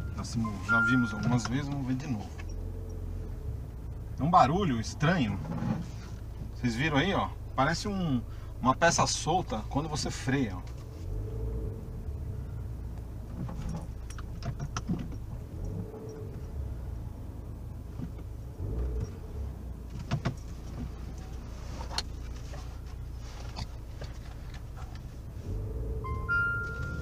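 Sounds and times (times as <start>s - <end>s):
road and engine rumble: 0.0s - 27.0s
sharp clicks and knocks: 13.3s - 15.8s.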